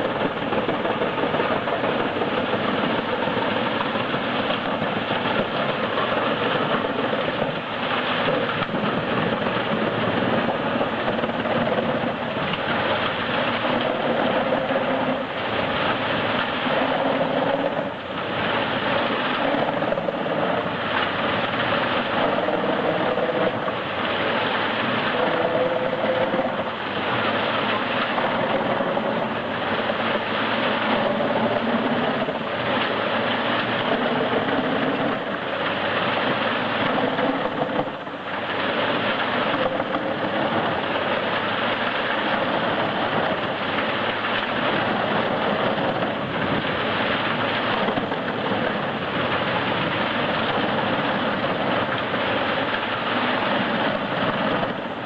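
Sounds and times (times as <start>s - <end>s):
wood chipper chipping logs: 0.0s - 55.0s.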